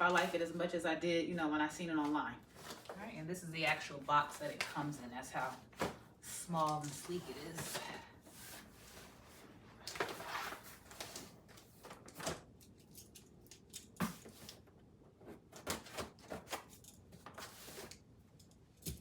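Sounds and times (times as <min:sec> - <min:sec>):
cardboard rustling and scraping: 0:02.5 - 0:03.2, 0:04.2 - 0:12.4, 0:14.0 - 0:18.0.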